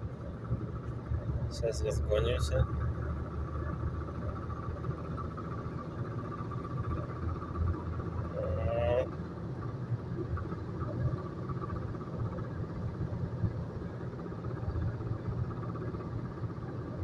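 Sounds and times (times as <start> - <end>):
faint steady tone: 0.0 - 17.0
low rumble of engine and road: 0.0 - 17.0.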